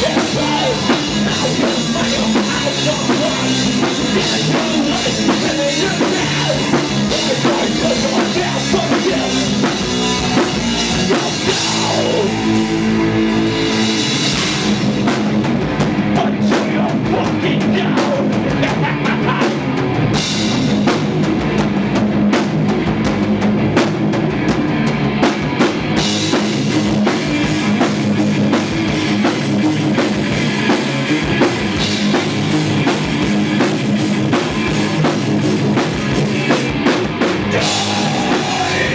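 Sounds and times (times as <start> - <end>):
heavy metal band playing: 0.0 - 38.9
fast drum hits: 13.6 - 38.9.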